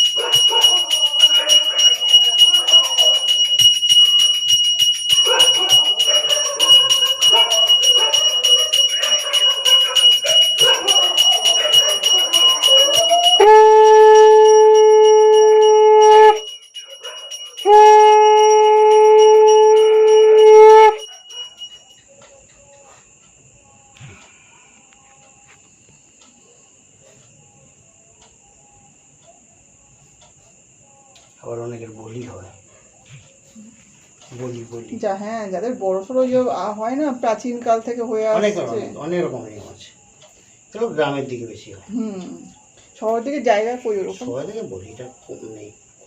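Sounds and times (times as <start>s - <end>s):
voices: 0.0s - 14.5s, 19.6s - 45.8s
hand bell ringing rapidly: 0.0s - 22.0s
faint crickets: 0.0s - 46.0s
conch shell blasts: 12.8s - 16.5s, 17.6s - 21.1s.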